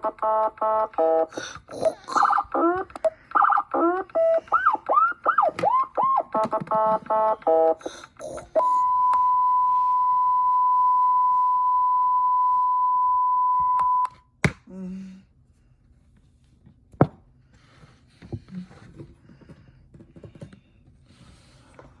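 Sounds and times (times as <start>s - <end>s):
high electronic tone: 0.0s - 1.4s, 2.0s - 14.1s.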